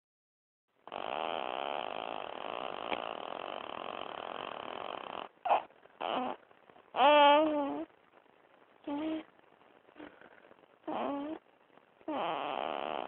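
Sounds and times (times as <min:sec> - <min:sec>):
baby snoring: 0:00.9 - 0:07.9, 0:08.8 - 0:09.3, 0:10.8 - 0:11.4, 0:12.0 - 0:13.0.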